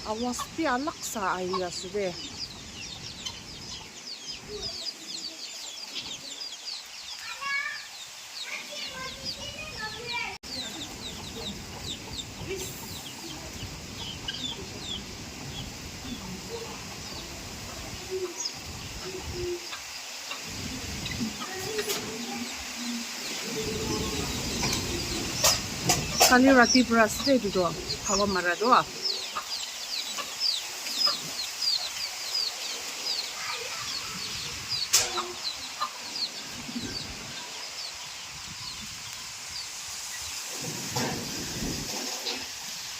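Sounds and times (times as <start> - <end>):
chickens clucking: 0.0 - 42.9
small birds chirping: 0.0 - 42.9
wind buffeting microphone: 9.0 - 19.8, 20.4 - 22.8, 23.4 - 29.0, 33.6 - 42.8.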